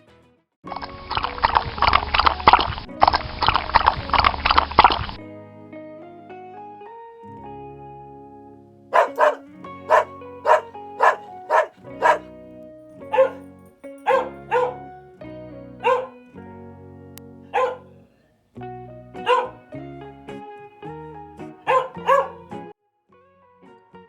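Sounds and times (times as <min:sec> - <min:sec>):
background music: 0:05.1 - 0:22.8
dog barking: 0:08.9 - 0:12.4, 0:13.1 - 0:13.4, 0:14.0 - 0:14.9, 0:15.8 - 0:16.2, 0:17.5 - 0:18.0, 0:19.2 - 0:19.6, 0:21.6 - 0:22.6.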